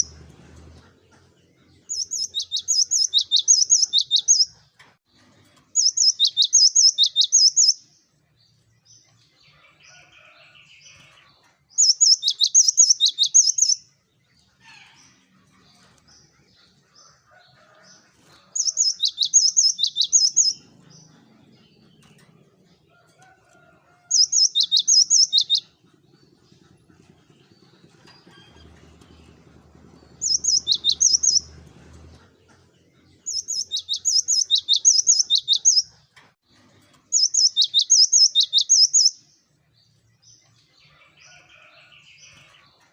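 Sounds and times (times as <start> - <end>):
bird singing rapid high notes: 5.8 - 7.8, 30.2 - 31.5, 33.3 - 35.9.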